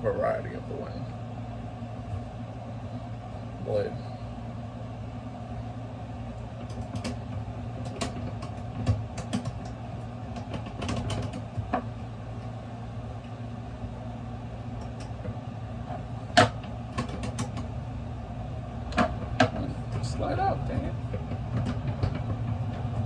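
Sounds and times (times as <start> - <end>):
steady low hum: 0.0 - 23.0
clicks and knocks of saw parts: 16.3 - 17.7.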